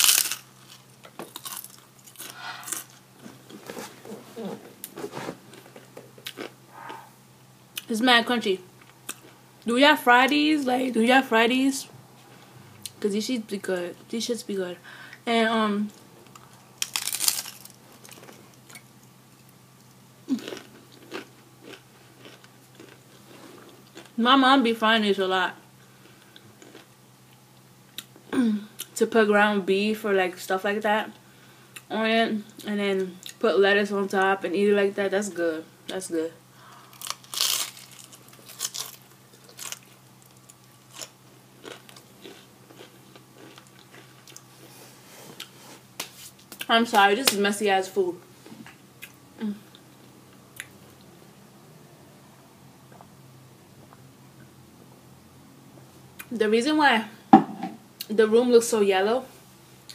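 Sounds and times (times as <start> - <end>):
crunchy bite into fried tortilla: 0.0 - 3.0, 16.3 - 18.4, 36.8 - 44.4
chewing with soft crunches: 15.9 - 24.2, 26.0 - 28.2, 36.9 - 46.7.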